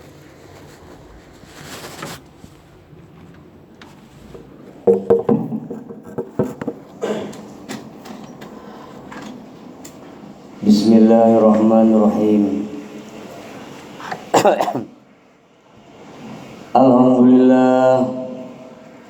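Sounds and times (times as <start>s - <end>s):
man coughing: 7.0s - 7.4s, 14.1s - 15.0s.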